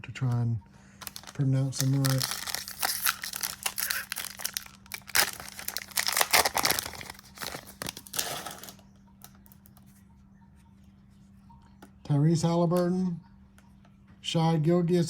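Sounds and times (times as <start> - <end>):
plastic wrapper tearing and crinkling: 1.0 - 8.8.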